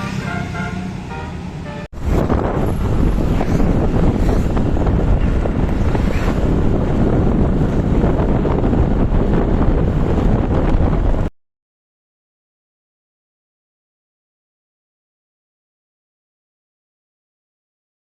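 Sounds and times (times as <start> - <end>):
wind buffeting microphone: 1.9 - 11.3.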